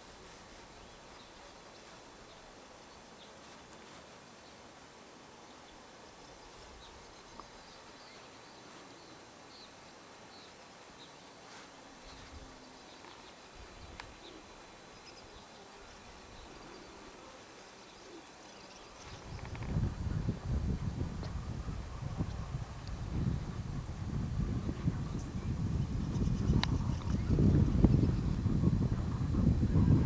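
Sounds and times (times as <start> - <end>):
steady hiss: 0.0 - 22.0.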